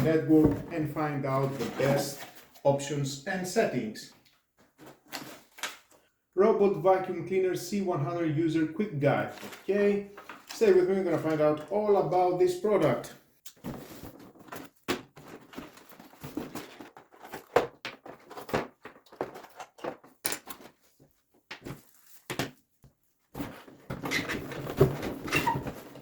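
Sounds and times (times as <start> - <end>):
cardboard and plastic rustling: 0.0 - 2.6, 4.2 - 6.0, 9.2 - 11.7, 13.5 - 26.0.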